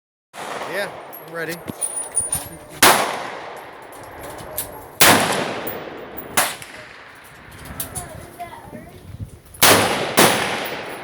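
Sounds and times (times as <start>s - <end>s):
rifle shots with echo: 0.4s - 1.6s, 2.8s - 3.9s, 4.8s - 7.4s, 9.6s - 11.0s
sharp gunshot crack: 0.4s - 1.6s, 2.8s - 3.6s, 5.0s - 7.1s, 9.6s - 11.0s.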